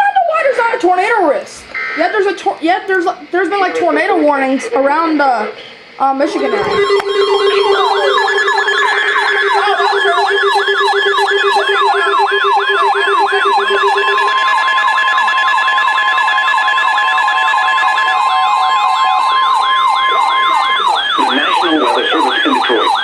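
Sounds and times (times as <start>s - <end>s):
steady siren tones: 6.1s - 23.0s
electronic sirens yelping: 6.2s - 23.0s.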